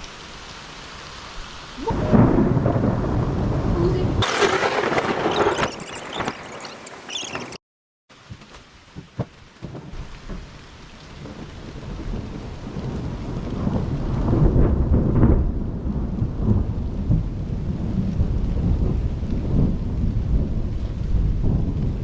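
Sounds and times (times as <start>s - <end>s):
rain falling: 0.0s - 22.0s
rolling thunder: 1.8s - 7.6s, 11.2s - 22.0s.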